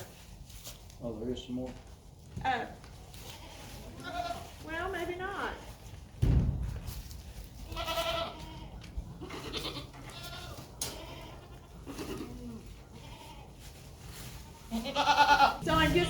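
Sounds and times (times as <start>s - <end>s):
goats bleating: 3.2s - 4.6s, 7.7s - 13.6s, 14.6s - 16.0s.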